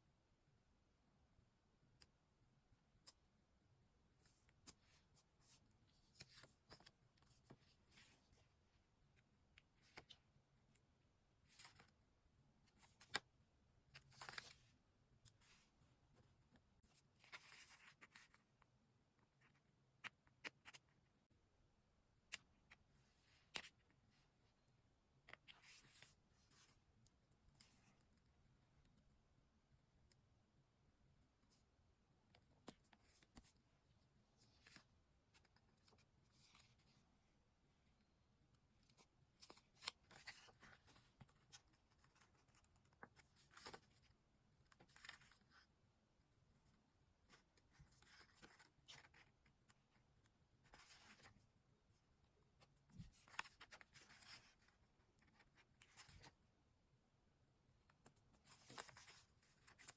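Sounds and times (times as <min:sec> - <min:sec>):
soft paper rustling: 0:04.1 - 0:21.1, 0:22.3 - 0:24.6, 0:25.2 - 0:29.1, 0:31.4 - 0:56.6, 0:57.7 - 0:59.9
paper and stickers crinkling: 0:58.4 - 0:59.9.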